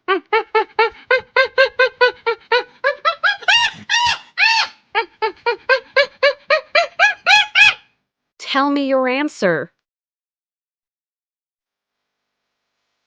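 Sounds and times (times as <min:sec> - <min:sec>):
monkey hooting calls: 0:00.1 - 0:07.9.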